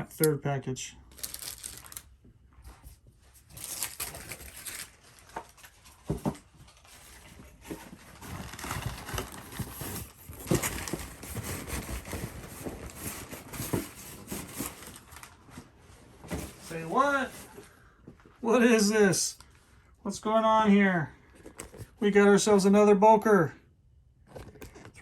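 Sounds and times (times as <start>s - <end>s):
packaging rustling and crinkling: 1.1s - 2.2s, 3.3s - 17.6s, 21.3s - 22.0s.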